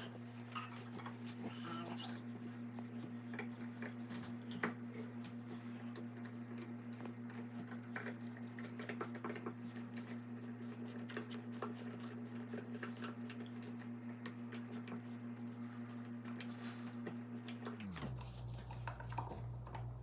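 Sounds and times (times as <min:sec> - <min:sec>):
steady low hum: 0:11.5 - 0:20.0.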